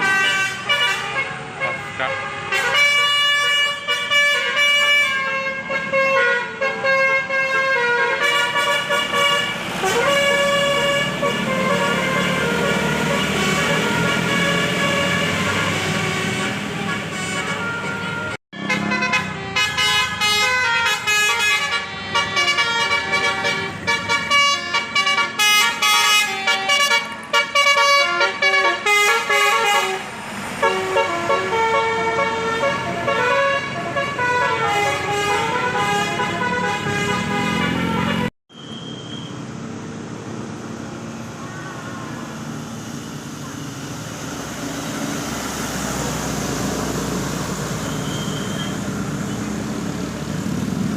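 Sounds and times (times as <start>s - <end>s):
bus engine running: 0.0s - 38.3s, 39.4s - 50.9s
multi-tone air horn melody: 0.0s - 38.8s, 41.4s - 42.6s.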